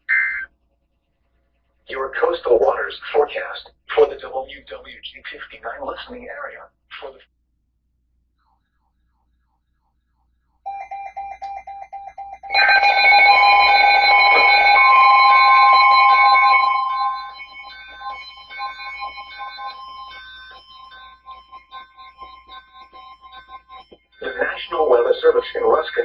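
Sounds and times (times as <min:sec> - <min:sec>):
electronic alarm tones: 0:00.0 - 0:00.5, 0:10.7 - 0:26.0
fast electronic beeping: 0:00.0 - 0:00.5, 0:10.7 - 0:26.0
steady high tone: 0:00.0 - 0:00.5, 0:10.7 - 0:26.0.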